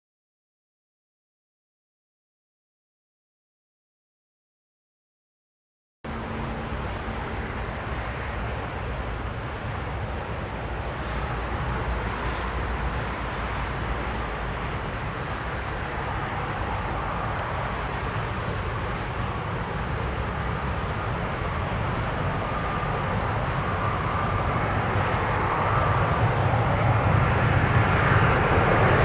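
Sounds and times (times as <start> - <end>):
distant jet engines rumbling: 6.1 - 29.0.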